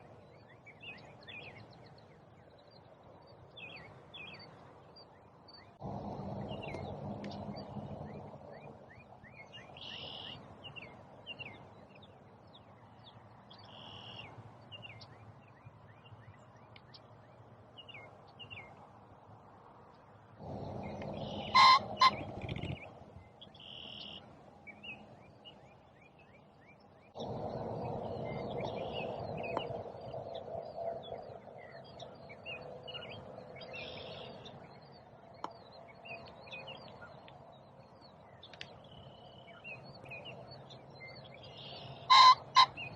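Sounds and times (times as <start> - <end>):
steady low rushing noise: 0.0 - 13.6, 14.5 - 23.6, 24.3 - 38.4
songbirds chirping and singing: 0.0 - 42.9
two-part call of larger bird: 21.4 - 22.2, 42.1 - 42.8.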